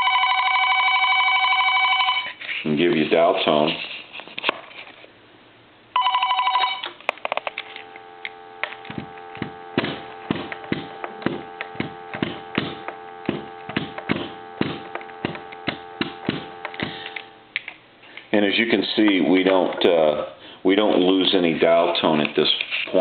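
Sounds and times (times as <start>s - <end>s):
dial tone: 0.0s - 2.3s, 6.0s - 6.9s, 7.5s - 10.3s
electronic telephone ringer warbling: 0.0s - 2.3s, 6.0s - 6.9s
phone handling clicks and knocks: 8.6s - 17.3s.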